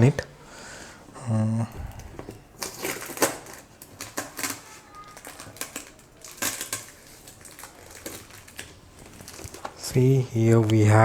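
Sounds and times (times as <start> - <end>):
cardboard parcel being opened: 1.7 - 10.3.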